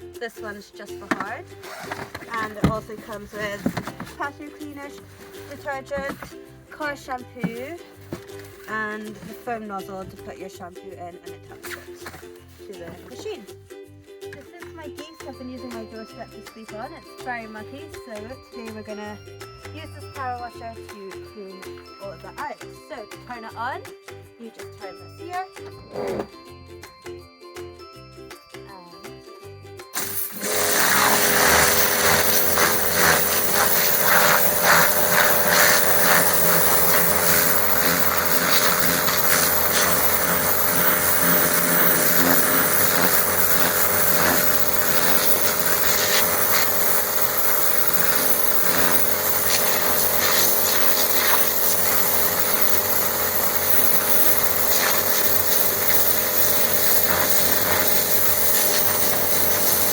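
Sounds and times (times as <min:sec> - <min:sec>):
pressure washer motor whine: 0:30.0 - 0:59.9
water jet spraying hiss: 0:44.4 - 0:59.9.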